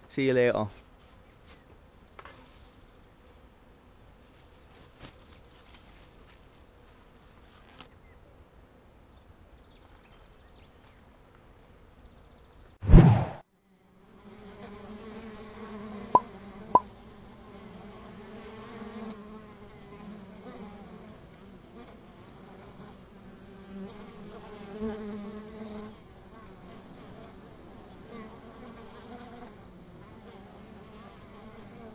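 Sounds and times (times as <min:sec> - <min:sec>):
honeybees buzzing: 0:13.6 - 0:31.9.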